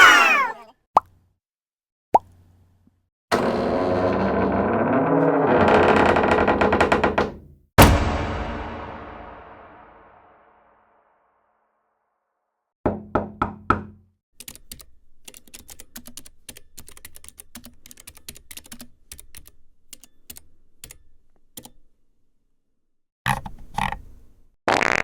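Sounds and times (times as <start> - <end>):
computer keyboard typing: 14.4 - 21.0.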